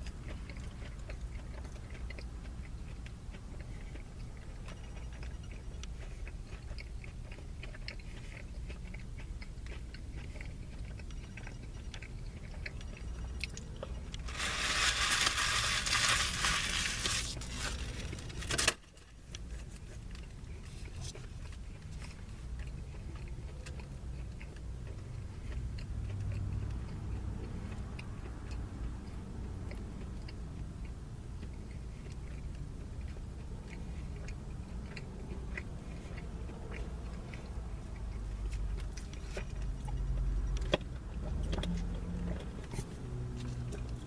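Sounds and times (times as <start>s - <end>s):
person chewing food: 0.0s - 44.0s
small clicks and crackles: 13.5s - 22.2s.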